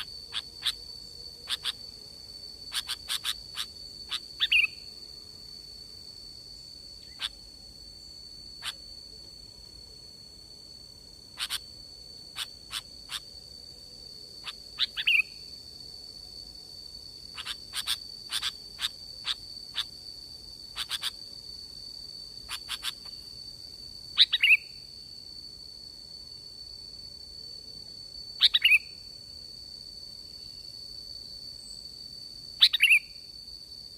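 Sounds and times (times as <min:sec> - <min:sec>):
bird chipping calls: 0:01.5 - 0:01.8, 0:02.7 - 0:04.8, 0:11.4 - 0:11.6, 0:20.8 - 0:21.1.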